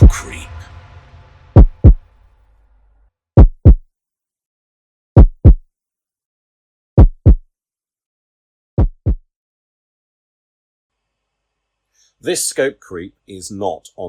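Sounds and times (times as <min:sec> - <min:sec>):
heartbeat double thumps: 0:00.0 - 0:00.3, 0:01.5 - 0:02.1, 0:03.4 - 0:03.8, 0:05.2 - 0:05.6, 0:07.0 - 0:07.5, 0:08.8 - 0:09.3.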